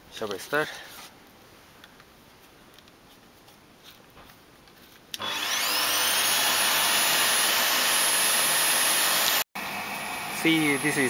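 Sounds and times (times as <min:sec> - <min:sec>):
vacuum motor whine: 0:05.2 - 0:11.0.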